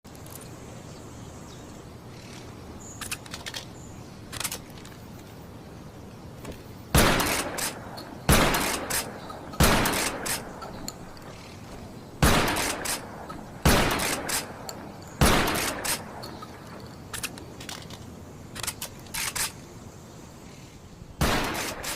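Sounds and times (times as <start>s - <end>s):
smaller clicks: 2.2s - 5.3s, 12.4s - 19.7s
light clicks: 2.2s - 5.4s, 12.5s - 19.7s
loud shotgun shots: 6.9s - 10.8s, 12.2s - 14.6s, 15.2s - 16.2s, 21.2s - 21.9s.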